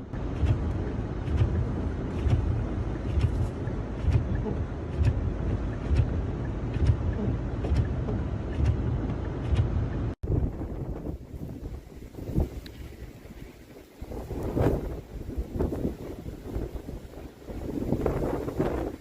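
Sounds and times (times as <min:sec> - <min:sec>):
wind buffeting microphone: 0:00.0 - 0:19.0
light ticks: 0:12.6 - 0:12.8.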